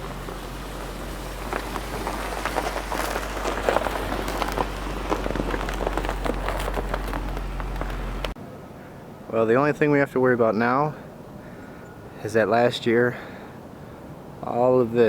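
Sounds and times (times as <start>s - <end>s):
car engine running: 0.0s - 8.4s
tyres crunching through wet snow: 0.0s - 8.4s.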